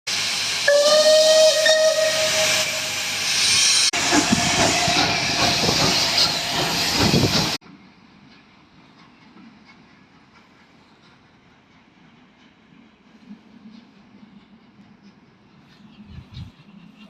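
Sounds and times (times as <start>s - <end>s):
loud hiss with whistling tone: 0.1s - 7.6s.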